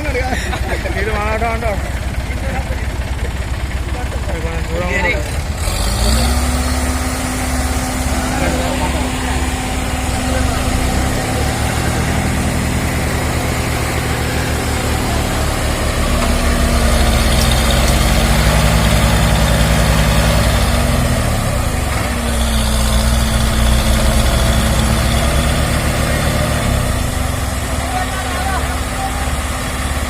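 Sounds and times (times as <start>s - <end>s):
heavy diesel engine running: 0.0s - 30.0s.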